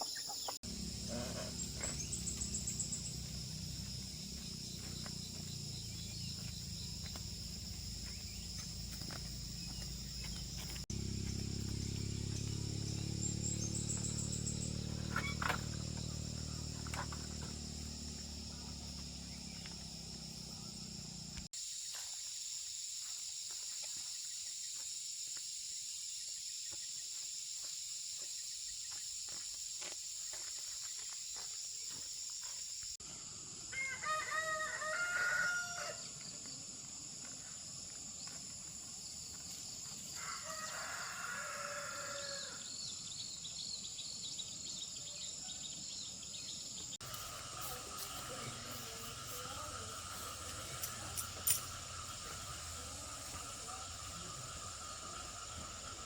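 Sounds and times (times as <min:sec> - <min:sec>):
high-pitched insect chorus: 0:00.0 - 0:56.0
rooster crowing: 0:33.7 - 0:36.1, 0:40.2 - 0:42.7.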